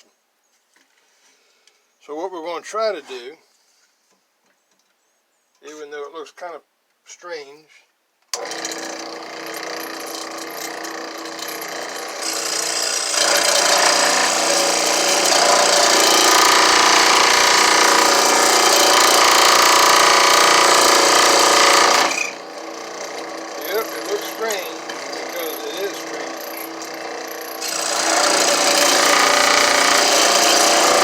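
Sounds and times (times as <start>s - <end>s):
power tool cutting wood: 8.4s - 31.0s.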